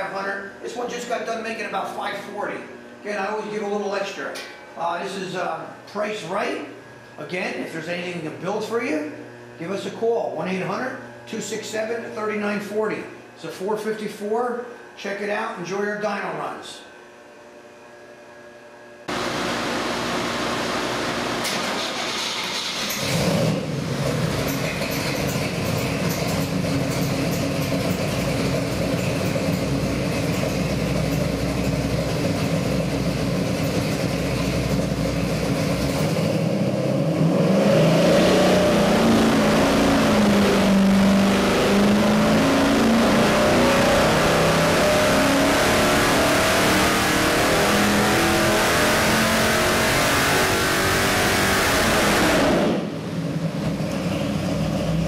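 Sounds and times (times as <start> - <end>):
engine running and revving: 21.4 - 55.0.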